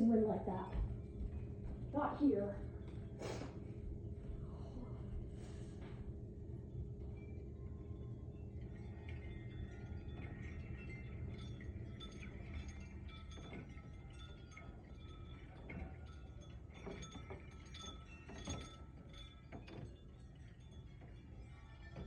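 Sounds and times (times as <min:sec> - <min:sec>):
wind chimes ringing: 0:07.0 - 0:22.0.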